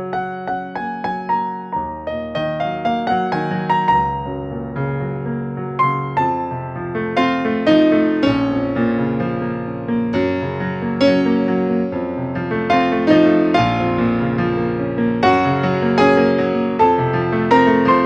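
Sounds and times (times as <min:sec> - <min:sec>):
synthesizer keyboard melody: 0:11.0 - 0:18.0.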